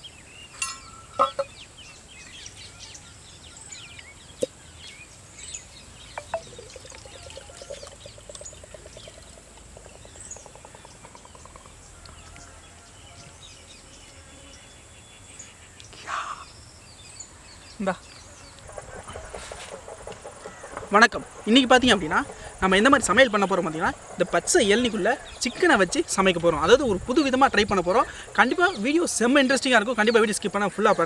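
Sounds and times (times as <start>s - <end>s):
small birds chirping: 0.0s - 31.0s.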